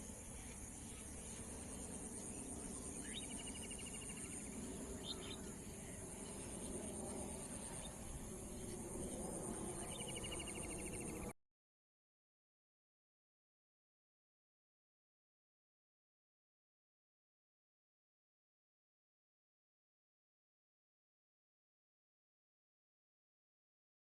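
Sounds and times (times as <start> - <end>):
crickets droning: 0.0 - 11.4.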